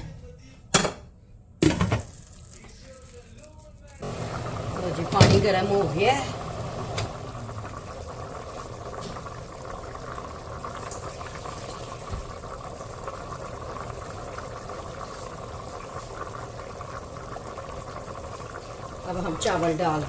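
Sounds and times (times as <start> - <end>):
water boiling in a pot: 4.0 - 20.0.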